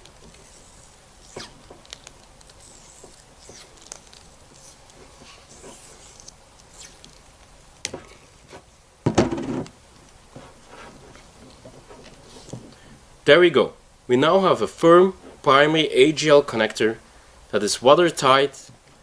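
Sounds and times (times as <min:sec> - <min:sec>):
tape crackling off roll: 0:00.0 - 0:12.8.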